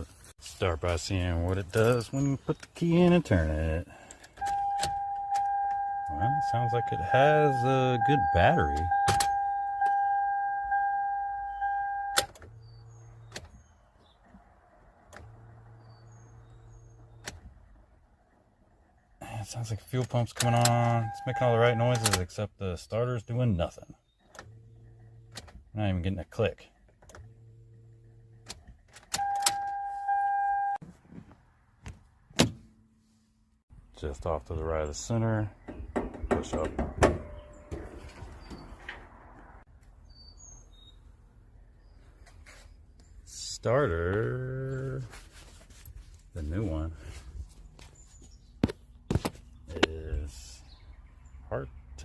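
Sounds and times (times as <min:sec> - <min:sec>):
electronic warning chime: 0:04.4 - 0:12.3, 0:20.9 - 0:22.1, 0:29.2 - 0:30.8
ignition key click: 0:06.8 - 0:12.4, 0:28.5 - 0:30.7.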